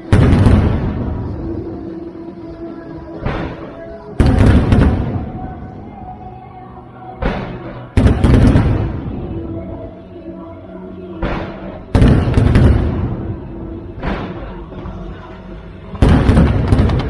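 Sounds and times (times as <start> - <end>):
fireworks booming: 0.0 - 2.0, 3.2 - 5.9, 7.2 - 9.8, 11.2 - 15.1, 15.9 - 17.0
steady music: 0.0 - 17.0.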